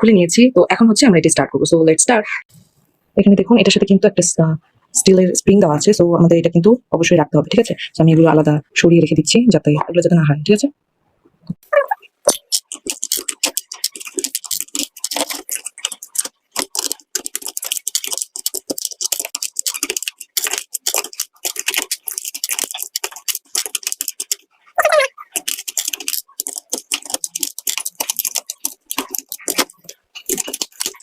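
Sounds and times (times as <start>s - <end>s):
keyboard keycaps clicking and snapping: 12.3s - 31.0s.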